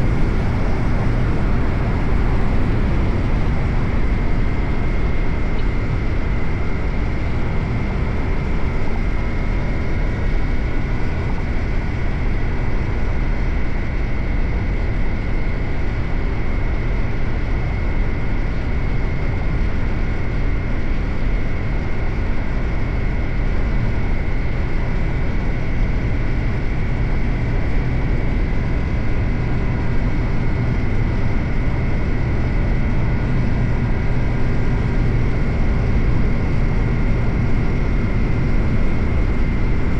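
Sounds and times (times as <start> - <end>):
motorcycle engine cruising: 0.0 - 6.0.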